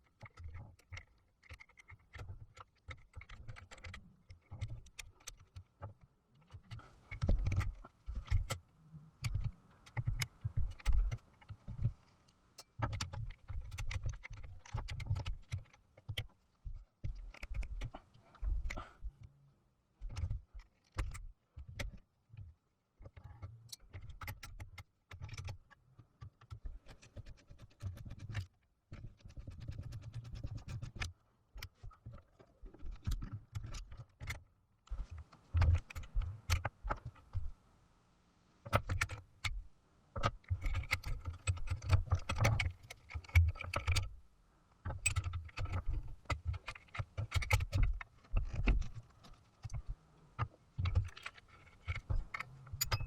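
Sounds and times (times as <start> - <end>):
metal parts and tools clinking: 52.3 - 53.0.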